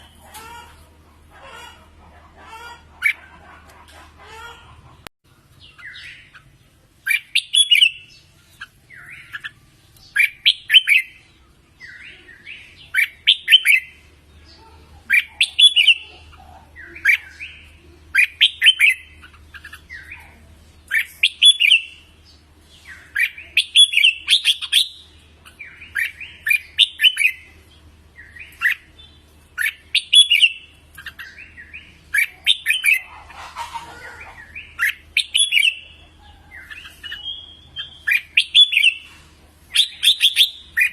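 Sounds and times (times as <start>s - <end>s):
bird singing bright phrases: 5.3s - 33.2s, 34.1s - 40.9s.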